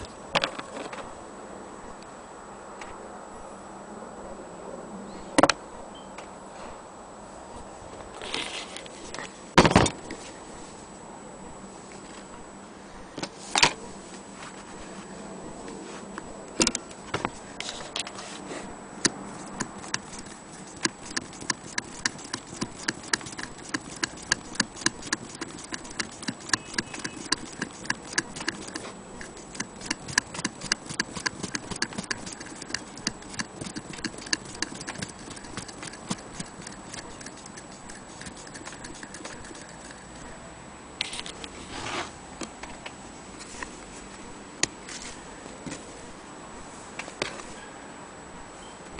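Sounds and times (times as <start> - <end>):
sewing machine clicking: 19.0 - 40.1.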